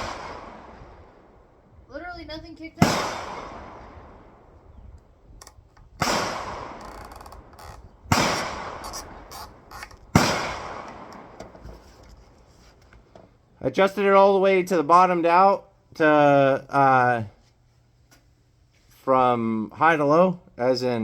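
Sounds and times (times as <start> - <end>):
rifle shots echoing: 0.0 - 1.4, 2.8 - 4.6, 6.0 - 11.4.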